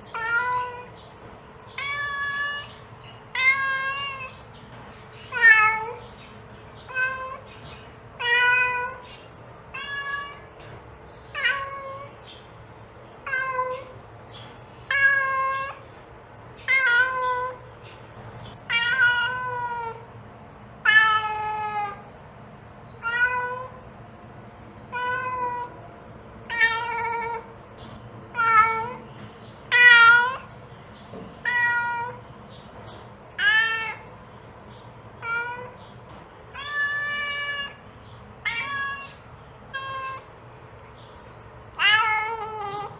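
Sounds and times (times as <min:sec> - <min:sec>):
cat meowing: 0:00.1 - 0:01.0, 0:01.7 - 0:04.4, 0:05.3 - 0:06.1, 0:06.8 - 0:07.5, 0:08.2 - 0:09.1, 0:09.7 - 0:10.6, 0:11.3 - 0:12.2, 0:13.2 - 0:14.0, 0:14.9 - 0:15.9, 0:16.6 - 0:17.7, 0:18.6 - 0:20.1, 0:20.8 - 0:22.1, 0:23.0 - 0:23.8, 0:24.8 - 0:25.8, 0:26.5 - 0:27.6, 0:28.3 - 0:29.1, 0:29.7 - 0:30.5, 0:31.4 - 0:32.2, 0:33.4 - 0:34.2, 0:35.2 - 0:35.9, 0:36.5 - 0:40.3, 0:41.8 - 0:42.9.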